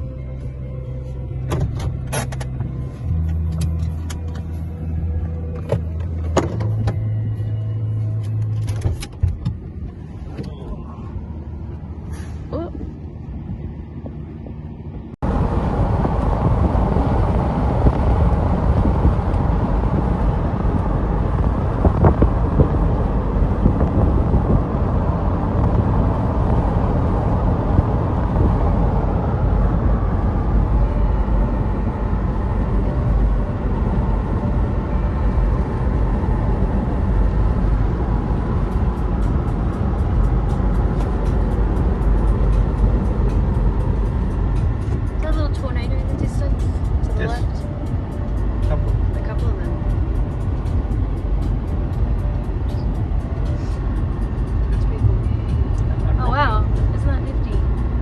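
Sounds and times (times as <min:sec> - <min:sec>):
car road and wind noise: 0:00.0 - 0:58.0.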